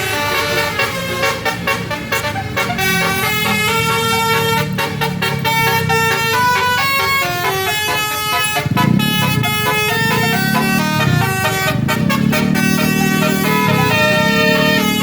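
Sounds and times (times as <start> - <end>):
musical bus horn playing a tune: 0.0 - 15.0.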